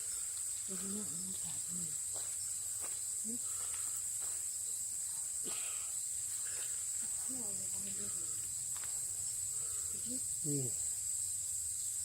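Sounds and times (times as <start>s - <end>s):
insect chorus drone: 0.0s - 12.0s.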